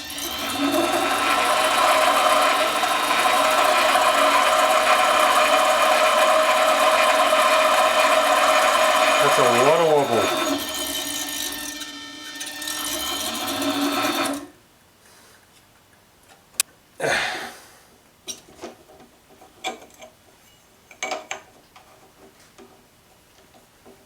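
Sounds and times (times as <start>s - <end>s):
lathe motor whine: 0.0s - 14.5s.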